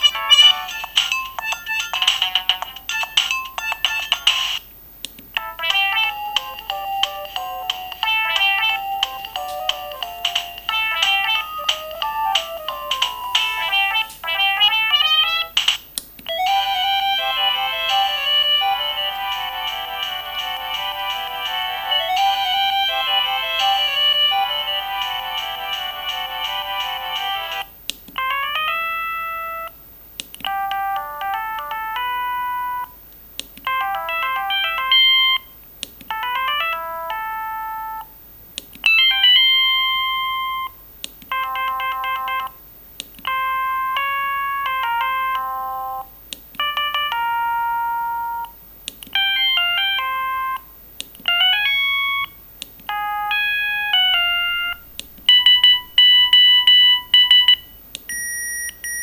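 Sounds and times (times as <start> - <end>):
mobile phone ringtone melodies: 0.0 - 4.6, 5.4 - 15.5, 16.3 - 29.8, 30.5 - 33.0, 33.7 - 35.5, 36.1 - 38.1, 38.9 - 42.6, 43.3 - 48.6, 49.2 - 50.7, 51.3 - 59.0
rapid repeated beeps: 51.7 - 52.4, 54.6 - 59.0.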